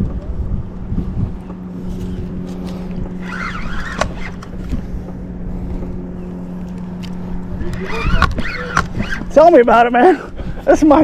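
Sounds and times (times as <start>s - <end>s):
fishing reel grinding: 1.8s - 4.9s, 6.6s - 9.7s.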